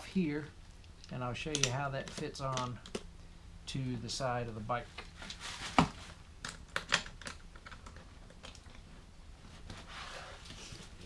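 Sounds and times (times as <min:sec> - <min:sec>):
mounting hardware clicking and knocking: 0:05.8 - 0:08.8.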